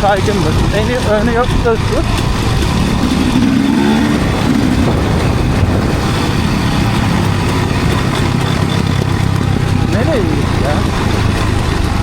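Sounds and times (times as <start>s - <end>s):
dirt bike engine revving: 2.2s - 11.6s.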